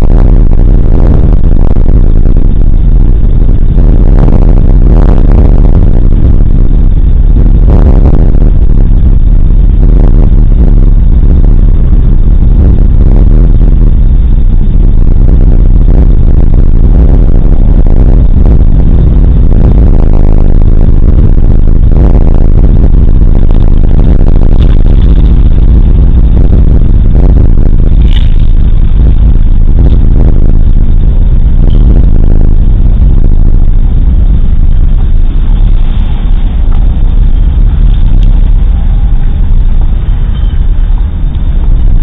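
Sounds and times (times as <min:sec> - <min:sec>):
distorted thunder rumble: 0:00.0 - 0:42.0.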